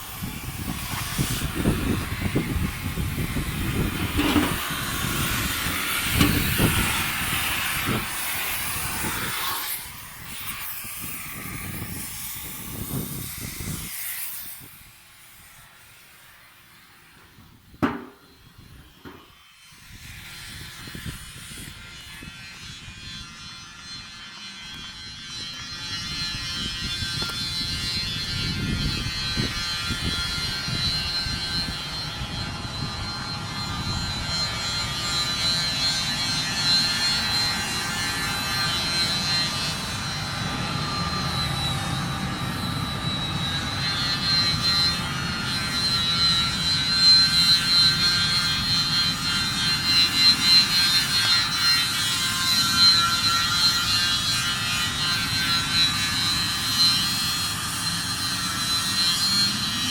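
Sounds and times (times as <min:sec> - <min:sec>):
high-pitched machine whine: 0:00.0 - 0:13.9, 0:17.8 - 0:59.9.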